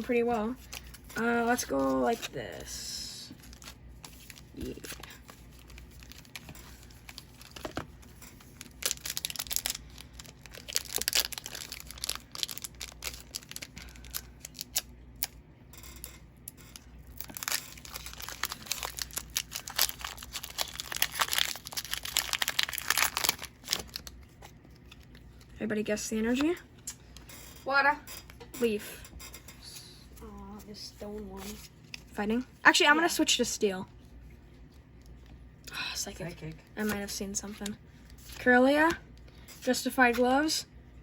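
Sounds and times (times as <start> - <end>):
foil wrapper tearing and crinkling: 3.4 - 15.4, 16.7 - 25.5.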